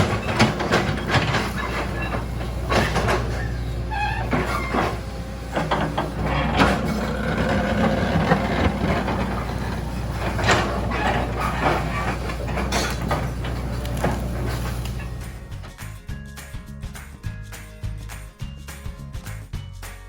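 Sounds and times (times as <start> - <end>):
bucket clanking on rocks: 0.0 - 15.6
diesel engine droning: 0.0 - 15.7.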